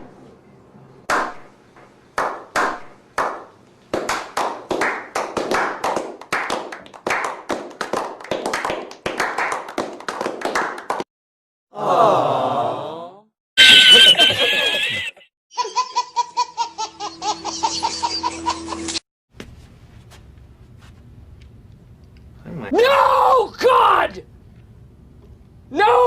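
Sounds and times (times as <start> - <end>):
hands clapping: 2.2 - 11.1.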